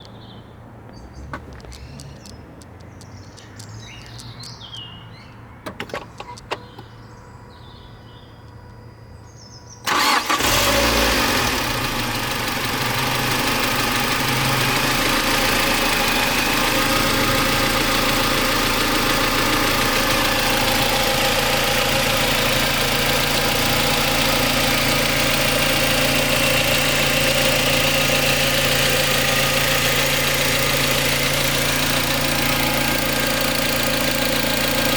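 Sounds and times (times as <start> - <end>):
starter clicks: 1.3 - 4.9, 5.7 - 6.9
car engine starting and idling: 5.6 - 7.1, 9.8 - 34.9
engine rattle: 9.9 - 34.9.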